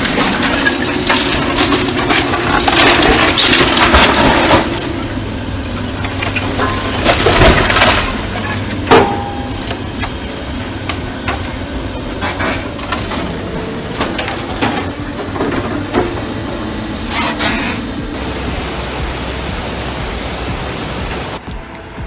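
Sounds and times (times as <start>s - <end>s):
debris crunching and breaking: 0.0s - 18.3s
excavator engine running: 0.0s - 22.0s.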